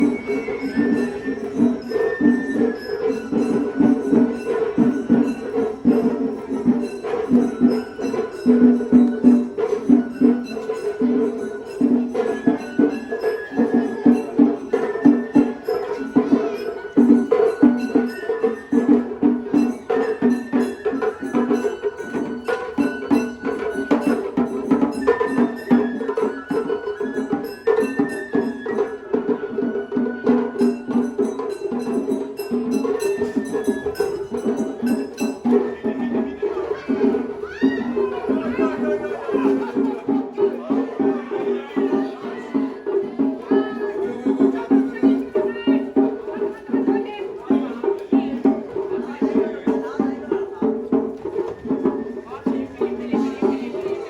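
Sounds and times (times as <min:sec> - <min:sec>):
bamboo flute phrases: 0:00.0 - 0:04.8, 0:11.5 - 0:31.3, 0:33.0 - 0:42.8, 0:51.2 - 0:53.8
drums in fast rhythm: 0:00.0 - 0:54.0.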